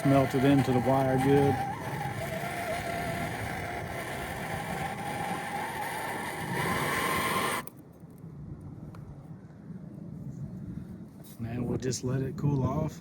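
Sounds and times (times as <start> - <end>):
gas torch flame hissing: 0.0 - 7.7.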